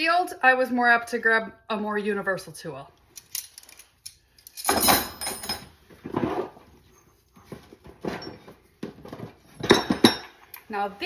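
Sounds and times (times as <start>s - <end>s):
metal hand tools clattering: 3.3s - 5.8s, 9.6s - 10.4s.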